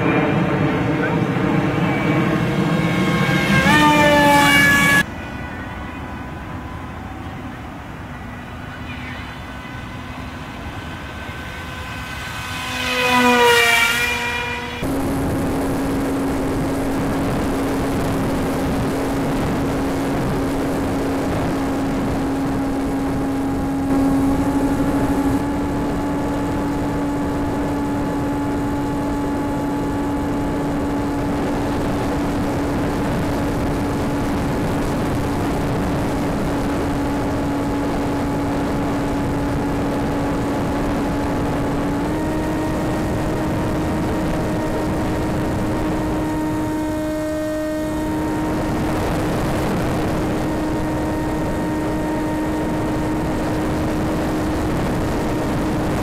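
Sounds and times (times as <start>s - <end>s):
model plane motor whining: 8.7s - 56.0s
rushing air: 9.4s - 56.0s.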